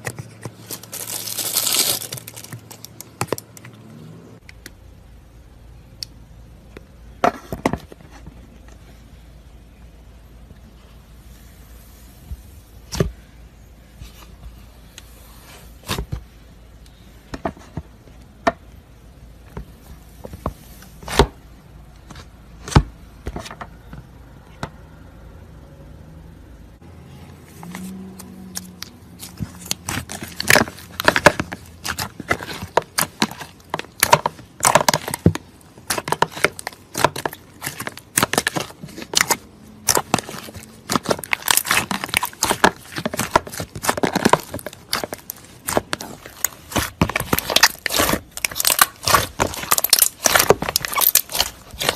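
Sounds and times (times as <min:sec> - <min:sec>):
slime crackling and popping: 0:00.5 - 0:03.6, 0:28.2 - 0:51.9.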